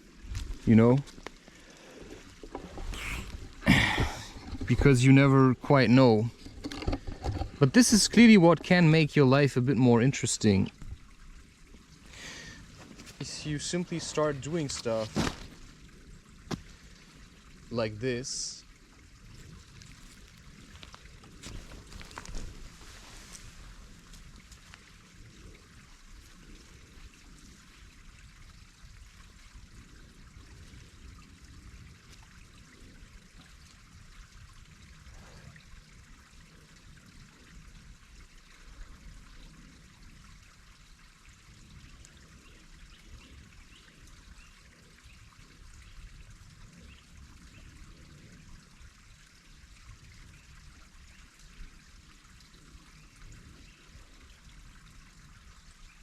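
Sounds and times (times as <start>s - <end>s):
even hiss: 2.6s - 6.3s.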